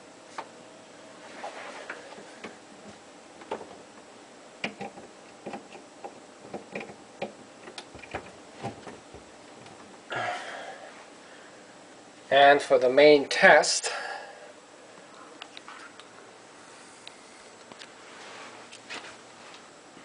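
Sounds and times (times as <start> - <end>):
short rustle: 1.2 - 2.4, 18.0 - 19.7.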